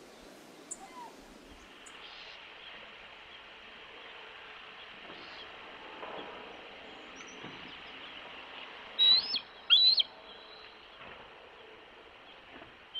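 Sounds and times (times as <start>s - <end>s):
bird calling: 0.0s - 2.3s, 9.0s - 10.7s
wind or surf hiss: 0.0s - 12.9s.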